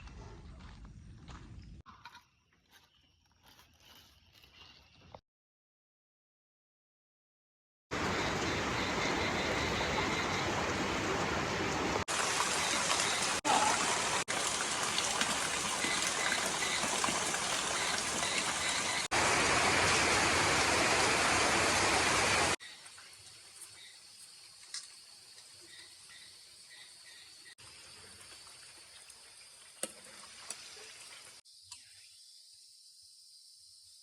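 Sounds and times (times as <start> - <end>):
rushing water: 7.9 - 22.6.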